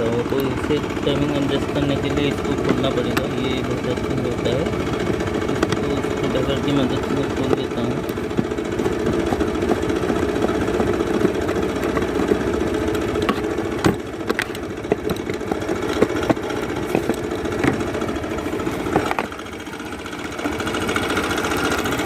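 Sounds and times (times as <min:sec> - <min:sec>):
scooter engine idling with rattle: 0:00.0 - 0:22.0.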